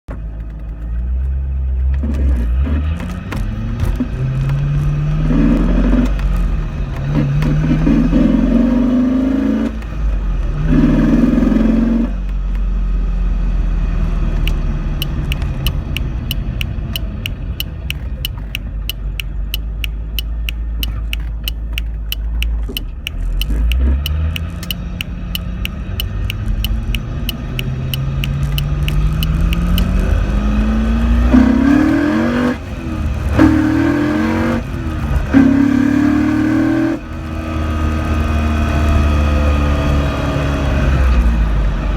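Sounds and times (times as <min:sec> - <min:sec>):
car engine revving: 0:01.2 - 0:41.9
sharp ticking: 0:14.4 - 0:30.3.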